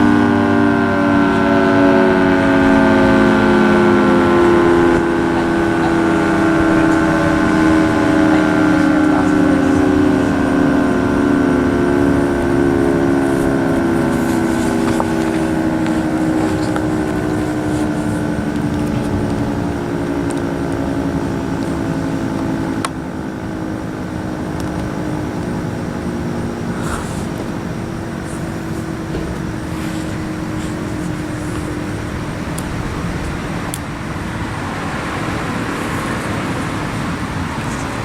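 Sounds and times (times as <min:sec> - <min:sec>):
road traffic noise: 0:00.0 - 0:38.0
warning siren winding down: 0:00.0 - 0:38.0.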